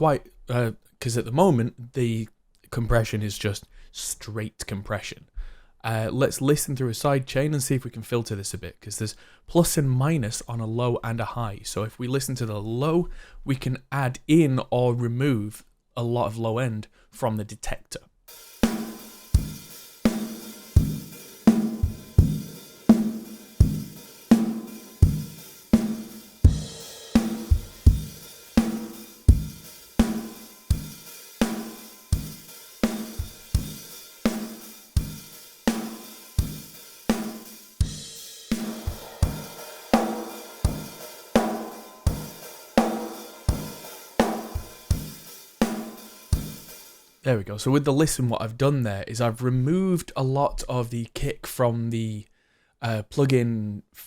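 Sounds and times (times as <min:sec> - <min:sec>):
cymbal crashes: 0:18.3 - 0:47.1
drum kit steady beat: 0:18.3 - 0:47.2.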